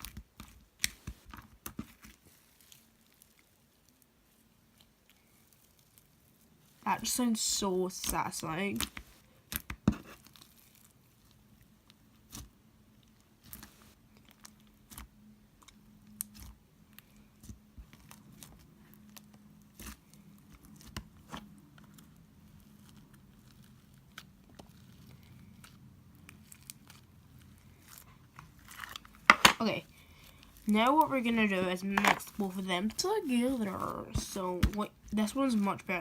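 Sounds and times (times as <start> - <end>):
slime crackling and popping: 8.7 - 29.8.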